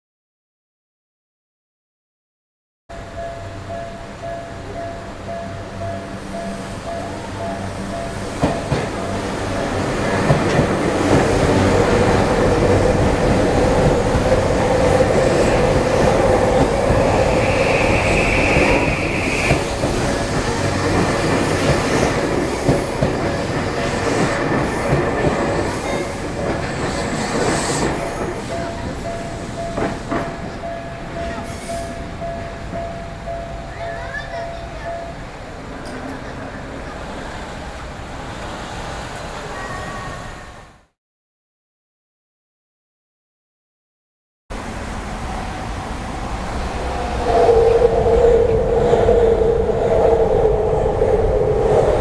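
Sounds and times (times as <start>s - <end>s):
crossing warning bell ringing: 2.9s - 10.6s, 28.0s - 36.0s
high squeal: 16.2s - 20.8s, 45.5s - 52.0s
train wheels clacking over rail joints: 18.2s - 32.0s.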